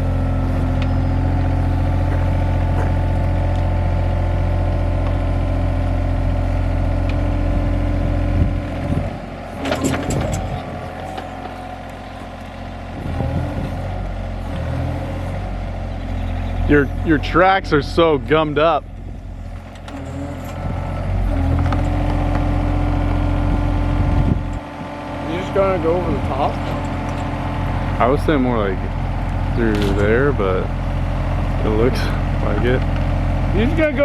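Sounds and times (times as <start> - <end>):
excavator diesel engine running: 0.0 - 34.0
squeaking: 9.5 - 13.2, 19.2 - 22.6, 25.4 - 28.2.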